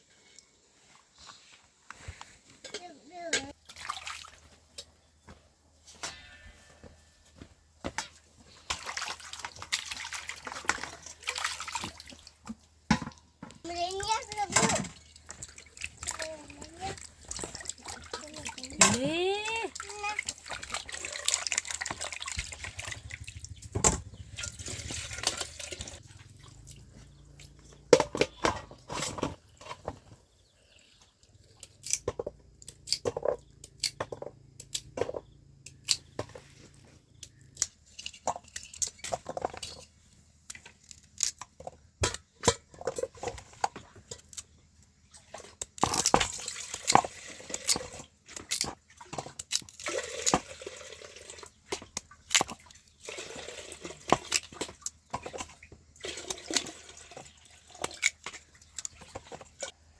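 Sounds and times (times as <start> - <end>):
water splashing and dripping: 3.4 - 5.0, 8.5 - 27.8, 45.0 - 59.8
knocks and clatters: 21.9 - 30.2.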